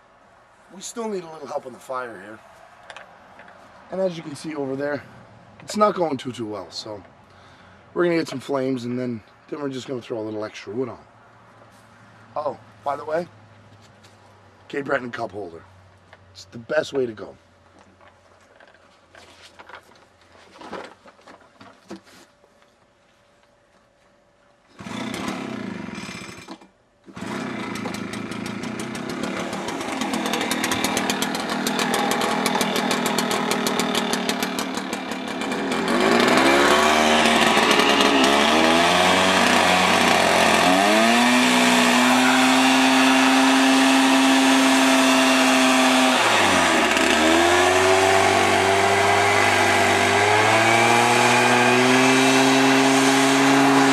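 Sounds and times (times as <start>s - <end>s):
leaf blower engine revving: 24.7s - 26.3s, 27.1s - 53.9s.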